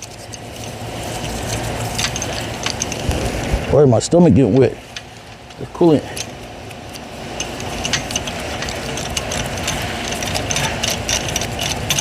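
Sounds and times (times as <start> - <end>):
power ratchet rattling: 0.0 - 3.5, 4.9 - 12.0.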